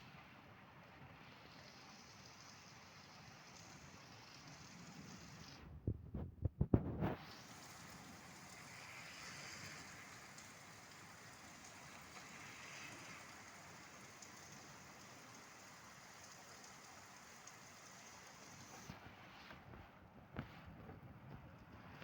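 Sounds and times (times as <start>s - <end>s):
steady rain falling: 0.0s - 5.6s, 7.2s - 19.1s.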